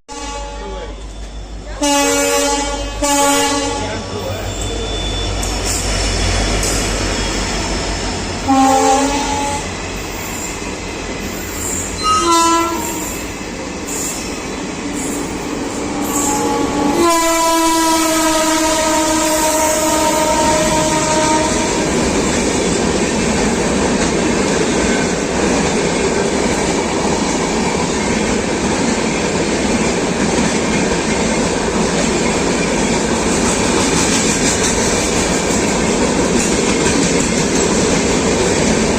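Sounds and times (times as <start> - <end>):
locomotive horn blasts: 0.1 - 1.2, 1.8 - 4.9, 8.4 - 9.7, 12.0 - 13.2, 16.0 - 21.9
trains rumbling and rail clatter: 0.1 - 38.9.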